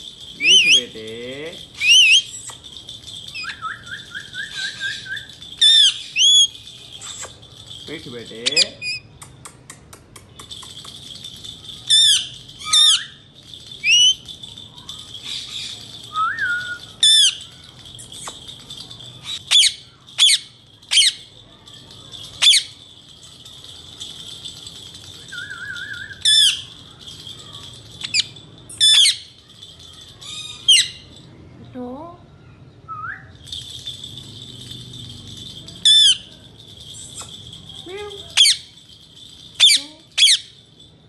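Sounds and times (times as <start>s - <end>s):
bird warbling trills: 0.3s - 7.4s, 11.9s - 21.3s
parakeet screeching: 1.8s - 2.5s, 16.5s - 17.7s, 19.2s - 21.3s, 27.4s - 29.3s, 30.2s - 31.0s.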